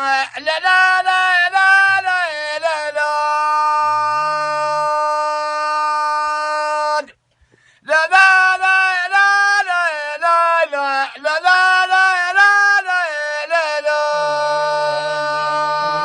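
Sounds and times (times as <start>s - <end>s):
man singing unaccompanied: 0.0s - 7.2s, 7.8s - 16.0s
lower second voice: 3.2s - 5.2s, 13.8s - 16.0s.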